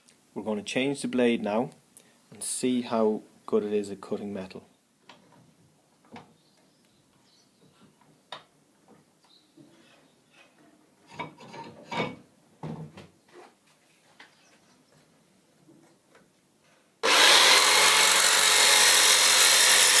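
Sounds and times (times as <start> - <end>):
metallic clatter and rubbing: 11.1 - 12.2.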